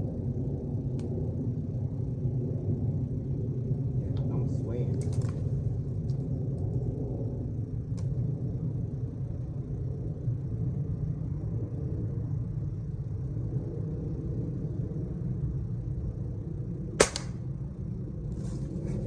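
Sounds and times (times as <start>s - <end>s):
steady low rumble: 0.0s - 19.0s
air rifle shot: 17.0s - 17.5s.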